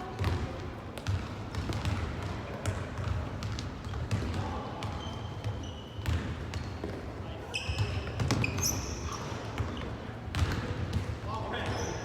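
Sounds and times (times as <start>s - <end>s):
shoe squeaks on floor: 4.9s - 6.7s, 7.4s - 10.0s, 11.7s - 12.0s.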